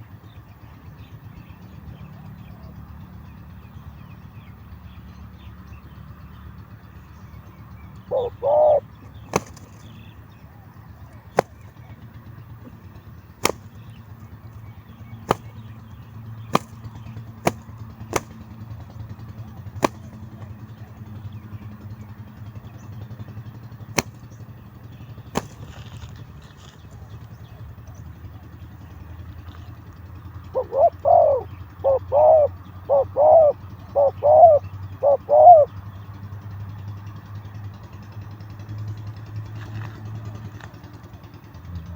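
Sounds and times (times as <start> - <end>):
dove cooing: 8.0 - 10.0, 12.6 - 13.9, 16.5 - 18.4, 19.7 - 21.0, 30.4 - 35.8
sharp single clicks: 9.3 - 10.0, 13.4 - 14.1, 15.3 - 15.7, 16.5 - 18.5, 19.8 - 20.5, 25.4 - 25.7.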